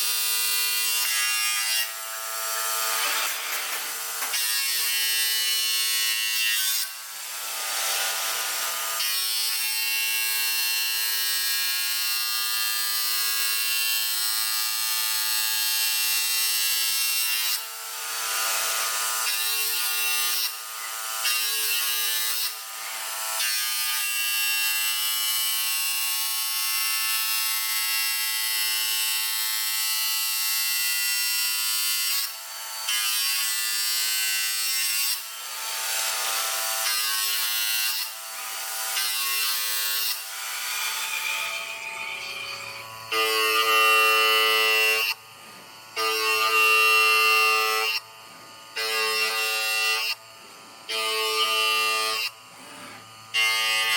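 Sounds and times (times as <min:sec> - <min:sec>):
machine motor whine with hiss: 0:34.2 - 0:53.9.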